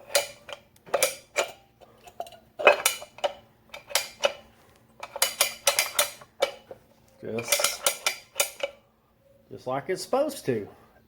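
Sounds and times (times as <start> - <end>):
metal clicks and clanks: 0.0 - 4.4, 5.0 - 8.8.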